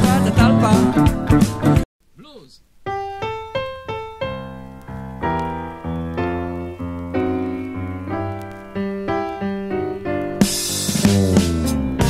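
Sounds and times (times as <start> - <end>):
bass line: 0.0 - 1.8, 10.4 - 12.0
piano playing: 2.9 - 12.0.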